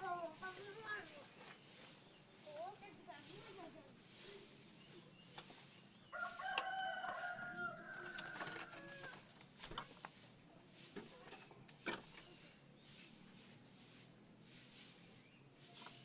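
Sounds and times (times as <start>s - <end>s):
rooster crowing: 6.1s - 9.3s.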